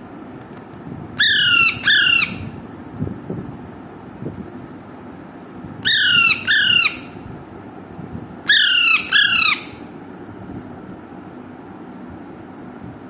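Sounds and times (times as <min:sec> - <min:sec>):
parakeet squawking: 0:01.2 - 0:02.6, 0:05.8 - 0:07.2, 0:08.5 - 0:09.8.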